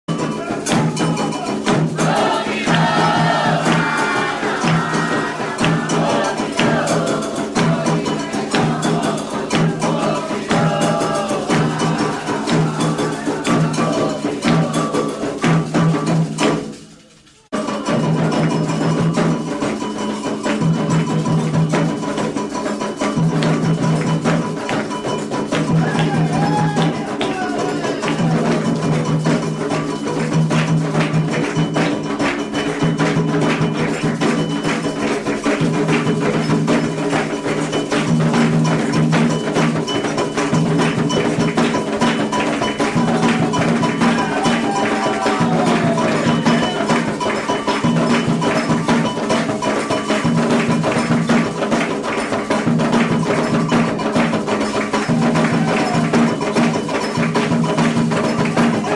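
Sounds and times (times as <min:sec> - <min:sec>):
hand drums: 0:00.0 - 0:58.9
group of voices chanting: 0:00.1 - 0:15.6, 0:25.6 - 0:28.9, 0:42.1 - 0:47.8, 0:55.2 - 0:56.3
metal bell beating: 0:00.1 - 0:58.9.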